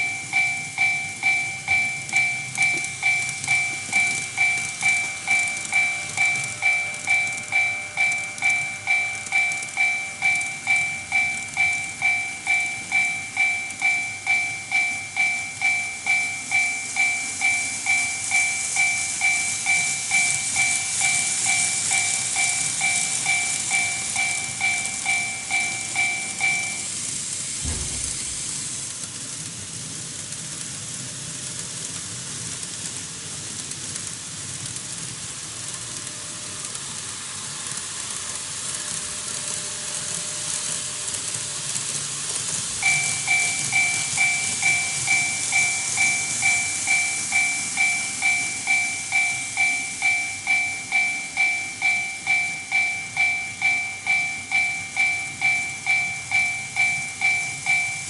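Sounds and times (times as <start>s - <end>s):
crossing warning bell dinging: 0.0s - 27.0s, 39.4s - 58.0s
model trains hissing on track: 0.0s - 58.0s
short low thump: 27.6s - 28.4s.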